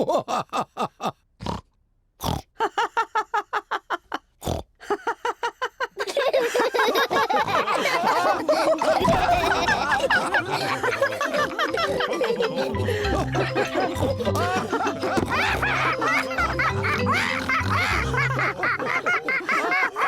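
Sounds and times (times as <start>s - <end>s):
cartoon pigs snorting: 1.4s - 2.5s, 4.4s - 4.7s, 7.1s - 20.0s
cartoon voices laughing: 4.8s - 20.0s.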